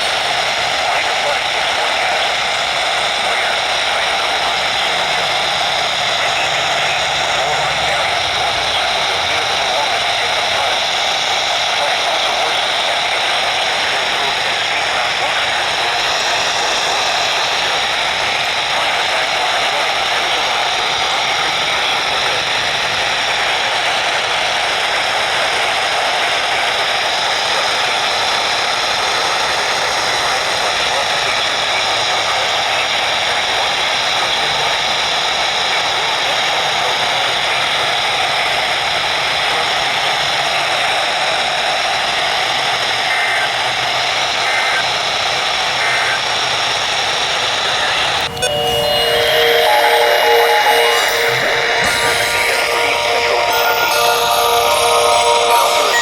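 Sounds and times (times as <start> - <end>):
radio static hiss: 0.0 - 22.7.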